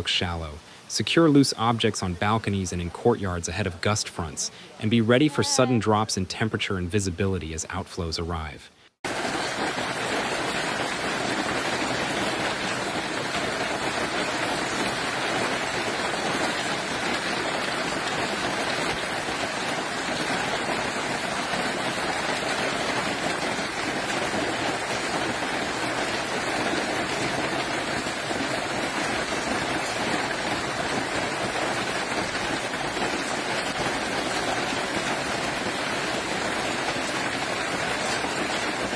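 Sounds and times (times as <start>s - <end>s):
steady rush of water: 9.1s - 38.9s.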